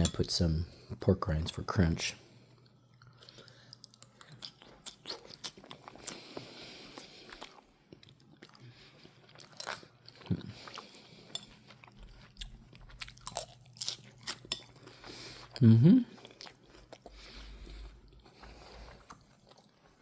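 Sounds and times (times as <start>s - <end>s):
crunchy chewing: 2.6s - 15.6s, 16.2s - 20.0s.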